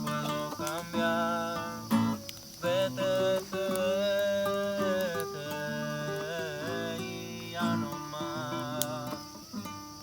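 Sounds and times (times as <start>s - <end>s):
acoustic guitar: 0.0s - 10.0s
person singing: 2.6s - 9.4s.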